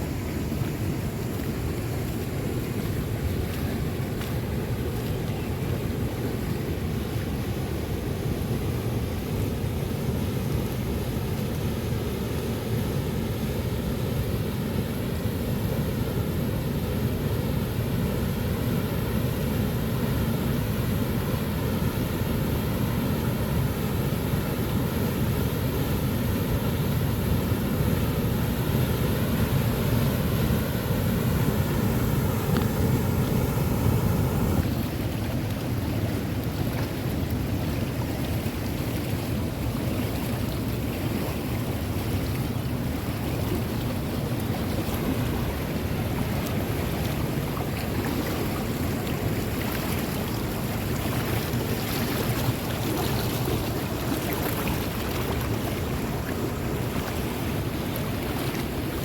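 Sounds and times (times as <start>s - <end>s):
waterfall water rushing: 20.5s - 59.0s.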